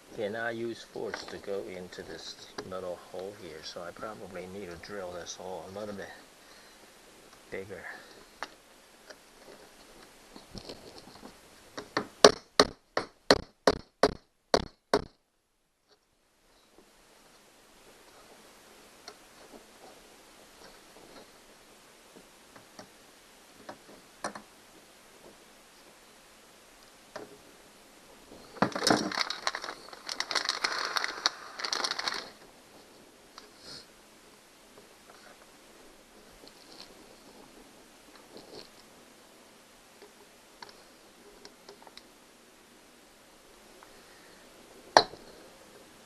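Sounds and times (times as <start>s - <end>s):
faint handling noise: 0.0s - 12.1s, 15.8s - 42.2s
sharp knocks: 12.0s - 15.2s.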